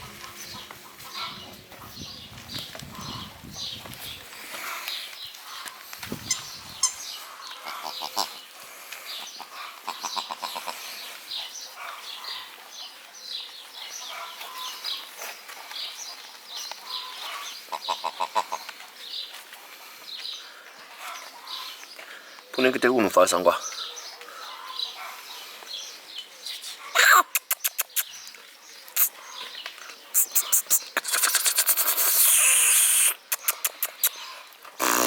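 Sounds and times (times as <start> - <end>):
puppies whimpering and squeaking: 6.2 - 7.1.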